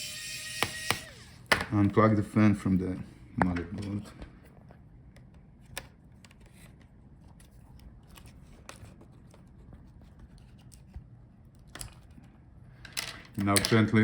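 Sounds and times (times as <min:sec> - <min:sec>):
small clicks and handling noises: 0:03.4 - 0:13.8.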